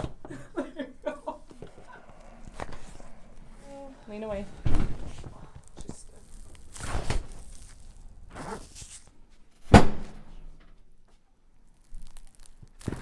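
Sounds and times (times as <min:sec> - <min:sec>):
joint cracking with a thud: 0:04.6 - 0:13.0.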